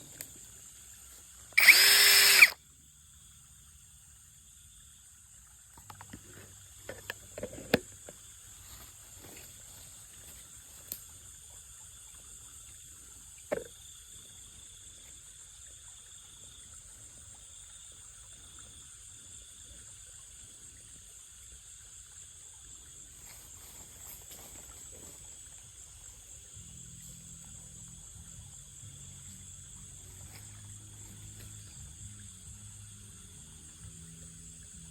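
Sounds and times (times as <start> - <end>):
high-pitched insect chorus: 0.0 - 34.9
cordless power drill boring: 1.6 - 2.6
faint handling knocks and clicks: 5.8 - 8.2.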